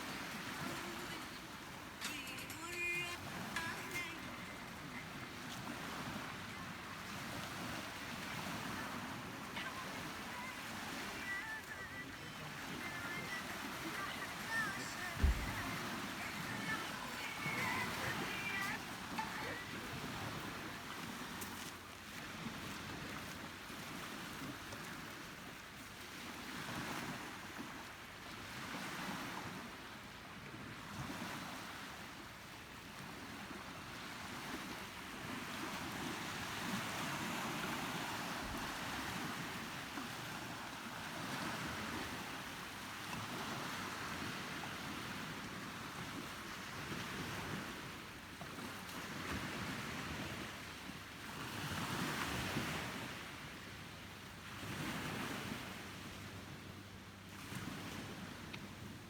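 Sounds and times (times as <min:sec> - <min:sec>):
sea waves washing in: 0:00.0 - 0:59.0
wind noise on microphone: 0:13.4 - 0:20.7.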